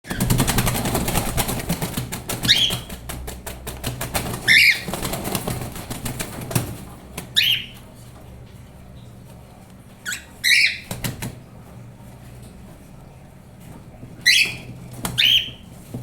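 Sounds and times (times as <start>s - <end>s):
cockatiel chick calling: 4.5s - 4.9s, 7.4s - 7.8s, 10.0s - 10.9s, 14.2s - 15.6s.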